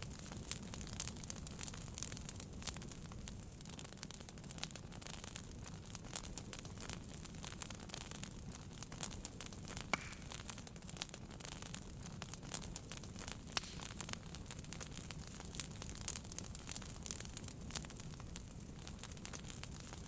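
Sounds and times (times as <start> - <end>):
low fire rumble: 0.0 - 20.0
wood fire crackling: 0.0 - 20.0
sharp fire pop: 9.8 - 10.4, 13.5 - 14.1.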